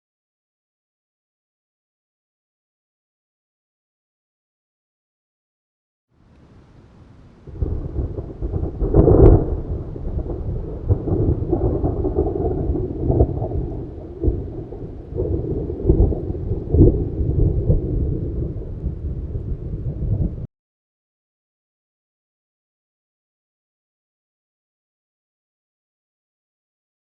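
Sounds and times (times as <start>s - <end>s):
thunder rumbling and cracking: 6.6s - 20.5s.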